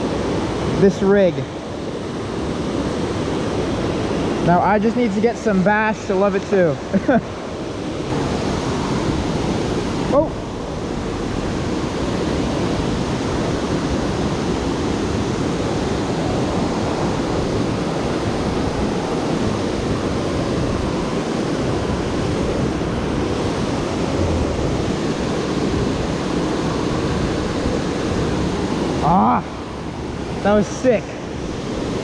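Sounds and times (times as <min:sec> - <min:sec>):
water roaring over a dam spillway: 0:00.0 - 0:32.0.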